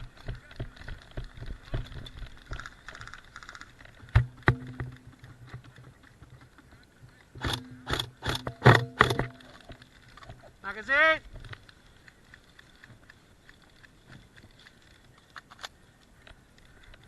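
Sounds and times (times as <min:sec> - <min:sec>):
airsoft gun shots: 0:07.4 - 0:09.5.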